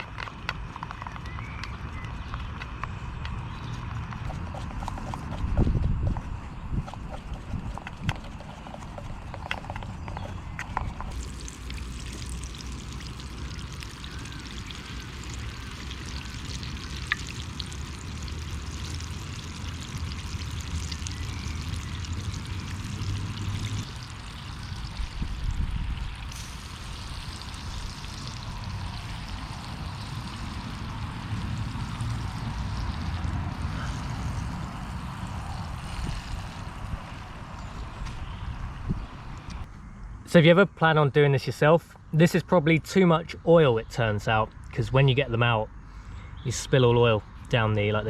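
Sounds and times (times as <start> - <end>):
food deep-frying in oil: 11.1 - 37.2.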